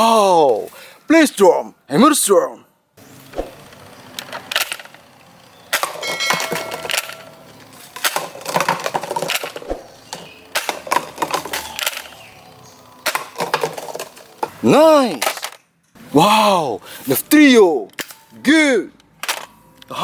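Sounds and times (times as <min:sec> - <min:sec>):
plastic toys clattering: 0:03.6 - 0:12.3, 0:13.0 - 0:15.7, 0:19.2 - 0:19.6
short metallic ring: 0:06.0 - 0:07.5.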